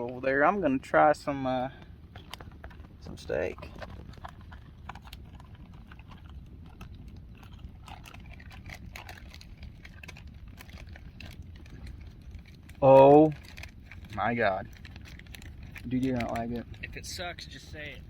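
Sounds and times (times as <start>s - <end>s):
low steady rumble: 0.0s - 18.0s
person chewing: 3.6s - 12.8s.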